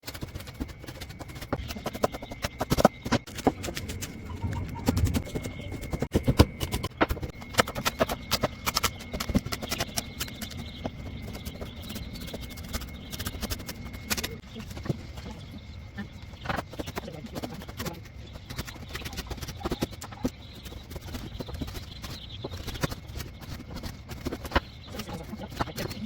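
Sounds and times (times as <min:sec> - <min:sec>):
chickens pecking: 0:00.0 - 0:26.0
chickens clucking: 0:01.6 - 0:06.0.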